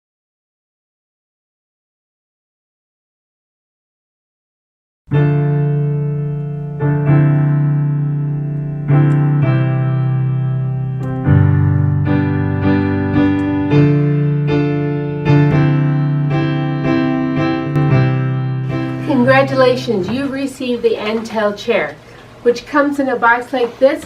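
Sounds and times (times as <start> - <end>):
piano chords: 5.1 - 22.0.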